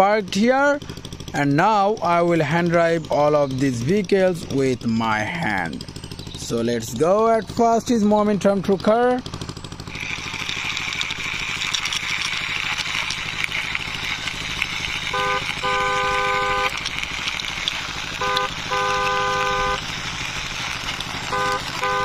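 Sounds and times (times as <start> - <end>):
truck engine sound effect: 0.0 - 22.0
two-note truck horn: 15.1 - 16.8, 18.2 - 19.8, 21.3 - 22.0.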